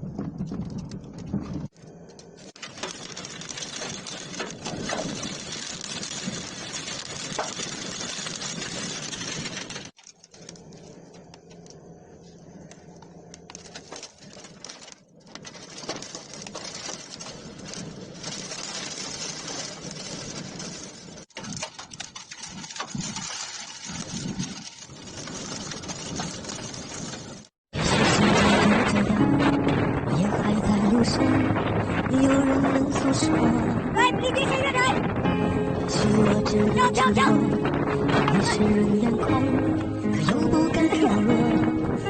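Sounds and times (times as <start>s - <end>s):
wind buffeting microphone: 0.0s - 1.8s, 3.0s - 9.9s, 22.4s - 42.0s.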